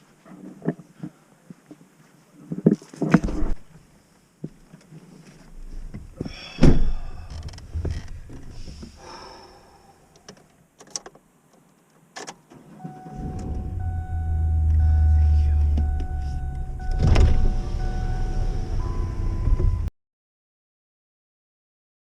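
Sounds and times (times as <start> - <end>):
clunks knocks and rustles: 2.5 - 3.6, 4.4 - 9.0, 15.6 - 17.6
loud thump: 6.0 - 8.5, 16.8 - 17.6
vehicle engine hum: 12.8 - 19.9.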